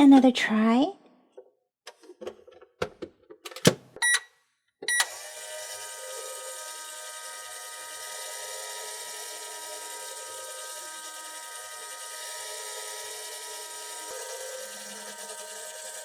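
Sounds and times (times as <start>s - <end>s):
toy microwave whirring: 4.0s - 16.0s.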